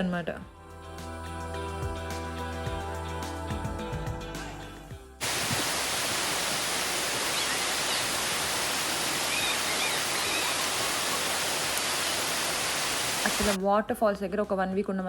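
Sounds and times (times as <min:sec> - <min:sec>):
waterfall rushing: 0:05.2 - 0:13.6
faint high chirps: 0:07.2 - 0:11.4.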